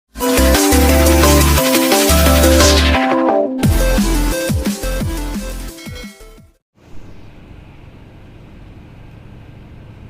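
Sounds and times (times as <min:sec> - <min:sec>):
electronic dance music: 0:00.2 - 0:06.2.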